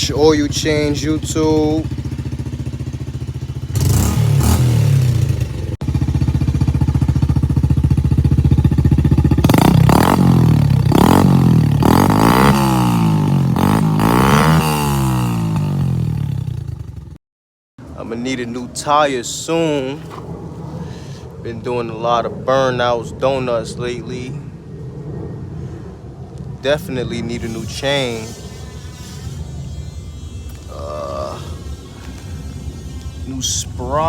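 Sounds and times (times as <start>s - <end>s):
dirt bike engine revving: 0.0s - 17.2s, 27.1s - 34.0s.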